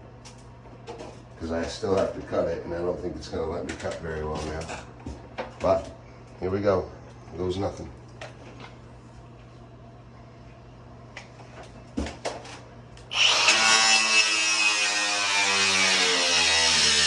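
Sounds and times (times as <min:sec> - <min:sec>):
power tool cutting sheet metal: 0:13.1 - 0:17.0.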